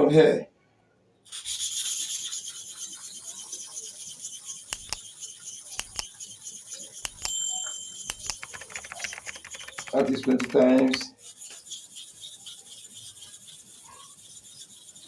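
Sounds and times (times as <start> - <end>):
metal blade scraping on stone: 1.6 - 8.3, 10.1 - 15.0
sharp clicks: 4.7 - 5.0, 5.8 - 6.1, 7.0 - 7.4, 8.0 - 11.1.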